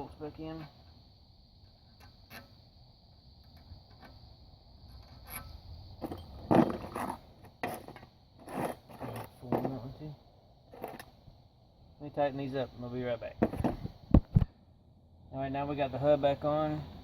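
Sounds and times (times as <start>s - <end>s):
metal scraping and rattling: 4.9s - 9.9s, 10.7s - 11.2s.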